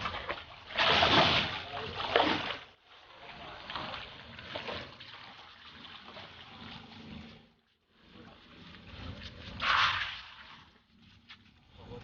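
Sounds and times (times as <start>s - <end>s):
soft water splashes: 0.0s - 8.2s
water sloshing and trickling: 0.0s - 12.0s.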